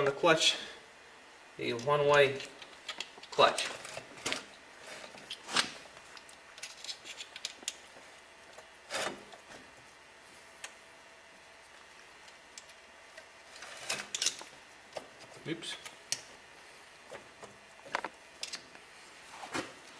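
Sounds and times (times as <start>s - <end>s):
metal parts clicking and rubbing: 1.8s - 8.0s, 13.5s - 16.3s, 17.9s - 18.7s.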